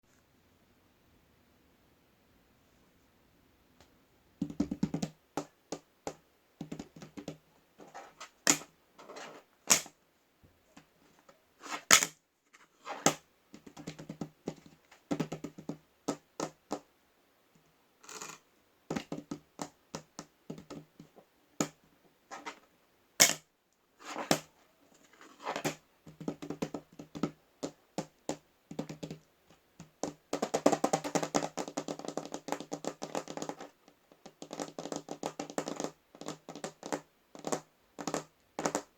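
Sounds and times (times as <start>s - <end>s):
tapping and clicking: 4.4s - 7.4s, 13.5s - 16.8s, 26.0s - 38.9s.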